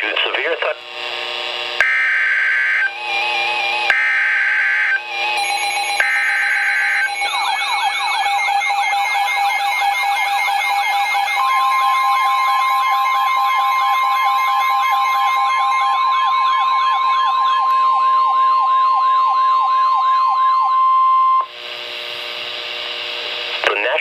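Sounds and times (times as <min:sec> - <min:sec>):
radio static: 0:00.0 - 0:01.8, 0:21.6 - 0:24.0
electronic sirens wailing: 0:01.8 - 0:21.5
steady warning beep tone: 0:04.8 - 0:21.5.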